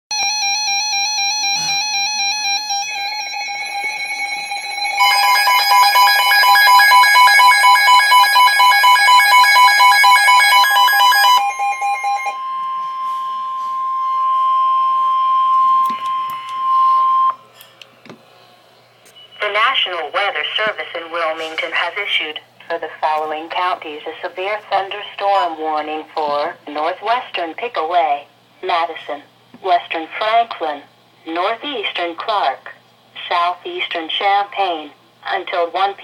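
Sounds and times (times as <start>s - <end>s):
long steady alarm tone: 0.1s - 17.4s
warbling electronic alert tones: 0.2s - 17.4s.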